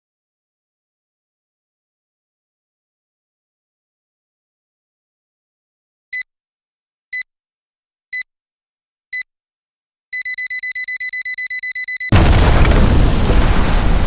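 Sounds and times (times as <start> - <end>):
electronic alarm beeping: 10.1 - 12.1
explosion with deep rumble: 12.1 - 14.0.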